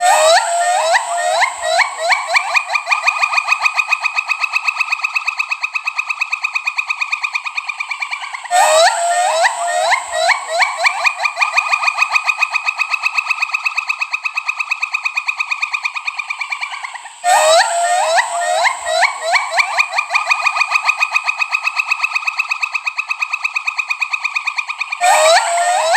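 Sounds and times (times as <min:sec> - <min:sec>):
gibbon whooping and trilling: 0:00.0 - 0:04.0, 0:08.5 - 0:12.4, 0:17.2 - 0:21.0, 0:25.0 - 0:25.9.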